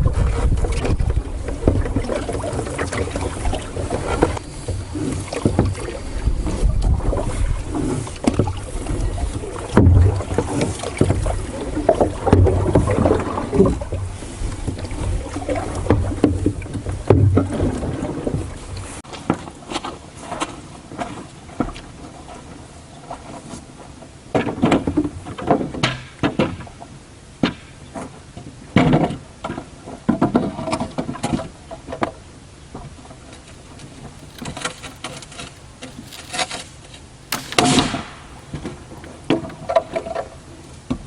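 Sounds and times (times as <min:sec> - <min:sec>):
knocks and snaps of dry branches: 0:33.4 - 0:41.0
loud wood crack: 0:33.4 - 0:41.0.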